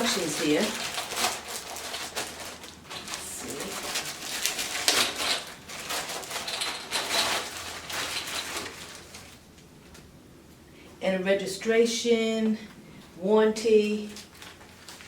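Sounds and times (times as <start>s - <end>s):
paper rustling and crinkling: 0.0s - 9.4s, 13.9s - 15.0s.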